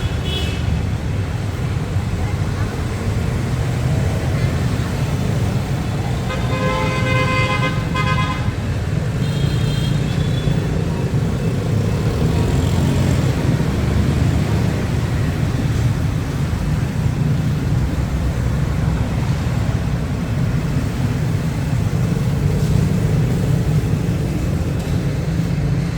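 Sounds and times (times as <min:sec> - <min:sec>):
motorbikes and cars passing: 0:00.0 - 0:25.9
vehicle horn: 0:06.3 - 0:08.6.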